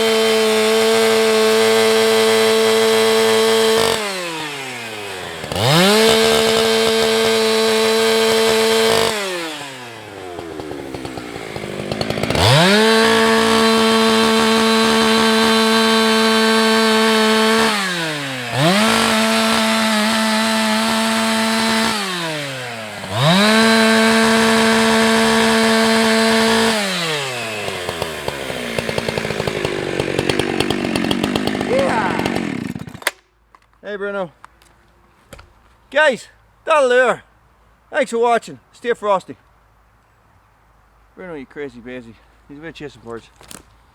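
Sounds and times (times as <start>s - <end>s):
chainsaw revving and idling: 0.0s - 33.2s.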